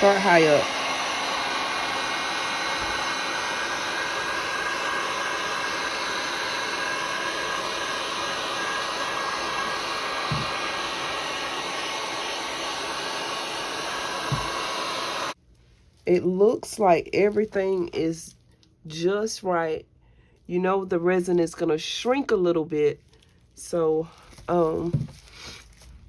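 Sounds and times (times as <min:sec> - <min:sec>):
heat gun blowing: 0:00.0 - 0:15.4.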